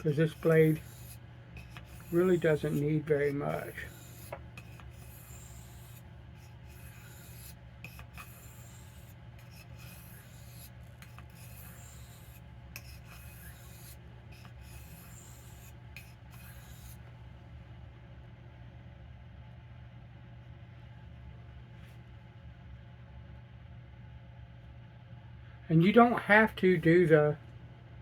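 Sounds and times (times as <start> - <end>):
knife scraping on whetstone: 0.0 - 17.0
low steady hum: 0.0 - 28.0.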